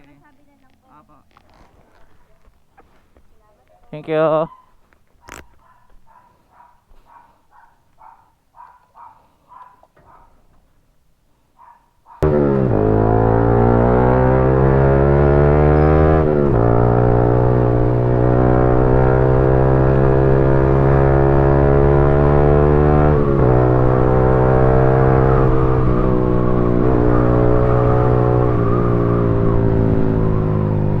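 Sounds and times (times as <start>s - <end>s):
vehicle engine running: 12.2s - 31.0s.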